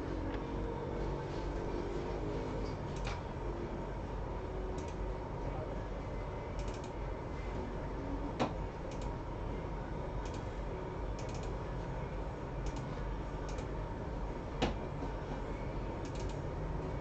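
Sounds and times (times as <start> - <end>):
computer keys clicking: 4.8 - 5.0, 6.6 - 7.0, 8.9 - 9.2, 11.2 - 11.6, 12.6 - 13.7, 16.0 - 16.4.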